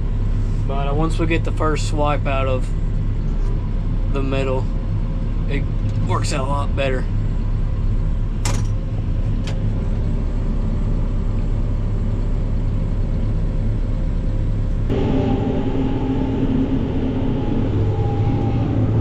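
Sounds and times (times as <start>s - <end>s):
tractor engine drone: 0.0s - 19.0s
machine drone with higher tones: 14.8s - 19.0s.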